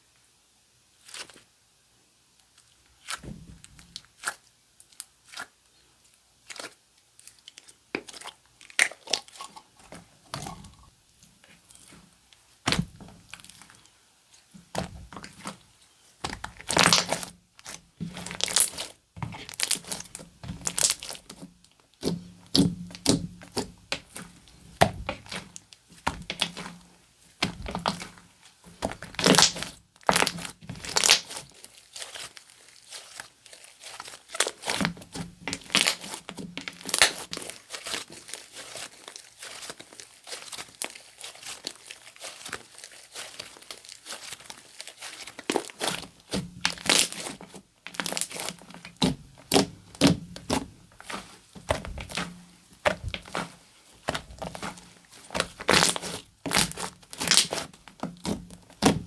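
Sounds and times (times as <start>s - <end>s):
slime crackling and popping: 6.4s - 9.5s, 12.7s - 13.9s, 16.2s - 59.0s.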